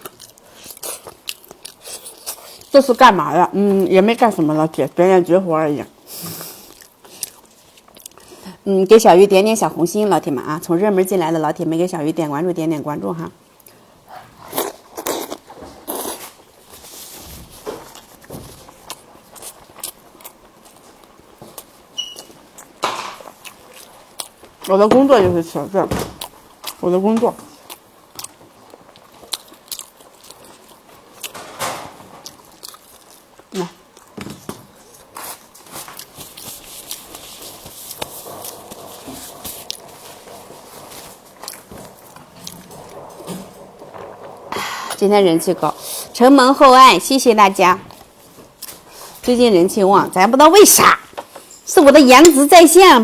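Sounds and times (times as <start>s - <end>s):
crunchy food being chewed: 0.0s - 2.8s, 6.4s - 8.4s, 13.6s - 16.4s, 17.9s - 24.7s, 27.4s - 31.4s, 32.2s - 40.0s.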